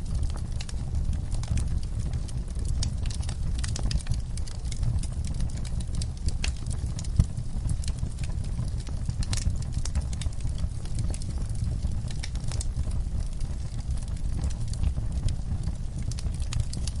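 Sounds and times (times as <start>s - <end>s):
campfire crackling and popping: 0.0s - 17.0s.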